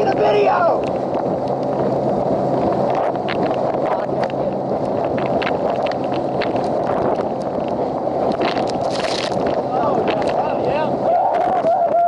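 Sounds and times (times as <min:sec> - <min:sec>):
boat engine hum: 0:00.0 - 0:12.0
wind buffeting microphone: 0:00.0 - 0:12.0
hull knocking and splashing: 0:00.8 - 0:12.0.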